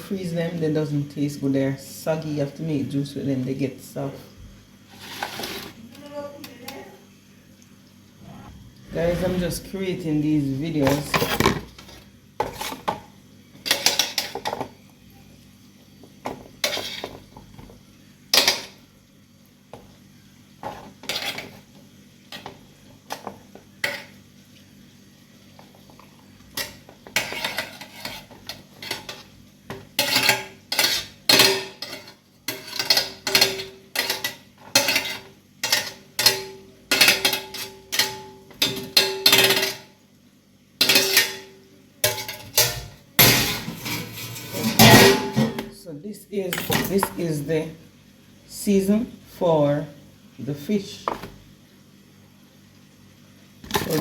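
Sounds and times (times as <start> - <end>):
utensils clinking against dishes: 30.0 - 39.9, 40.8 - 45.7.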